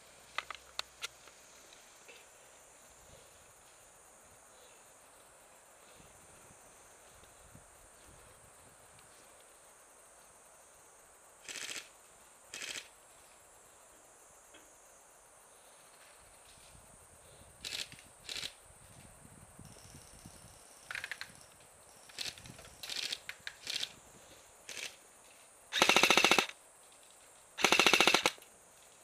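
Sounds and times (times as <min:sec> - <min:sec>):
high insect drone: 0:00.0 - 0:29.0
airsoft rifle automatic fire: 0:25.7 - 0:26.6, 0:27.6 - 0:28.4.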